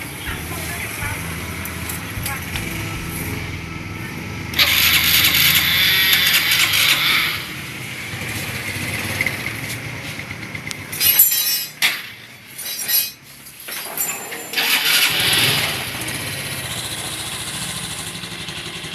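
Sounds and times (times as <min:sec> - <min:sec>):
motorcycle engine idling: 0:00.0 - 0:10.9, 0:15.1 - 0:18.9
loud hissing bursts: 0:04.5 - 0:08.3.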